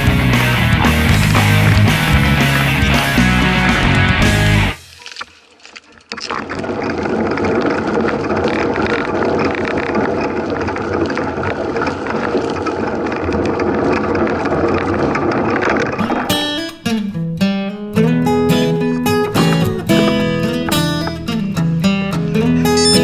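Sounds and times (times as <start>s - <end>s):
mountain bike riding: 0.0s - 4.1s.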